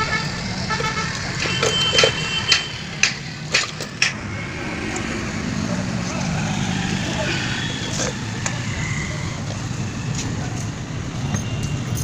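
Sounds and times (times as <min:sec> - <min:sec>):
street traffic hum: 0:00.0 - 0:12.0.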